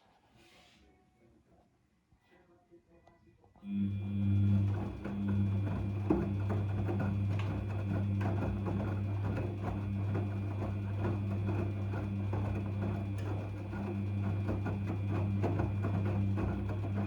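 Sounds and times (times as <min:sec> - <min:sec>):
washing machine motor hum: 0:03.6 - 0:17.0.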